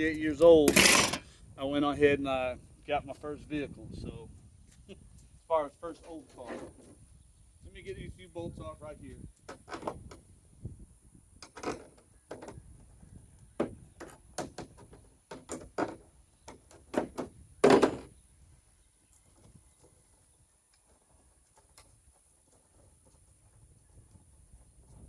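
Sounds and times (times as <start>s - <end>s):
hand tools knocking and clunking: 13.6s - 18.1s.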